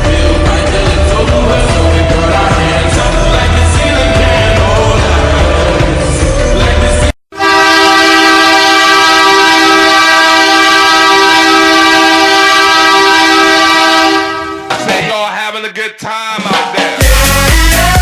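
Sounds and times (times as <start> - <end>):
music with singing: 0.0 - 7.2, 14.6 - 18.0
goal horn blast: 7.3 - 15.0.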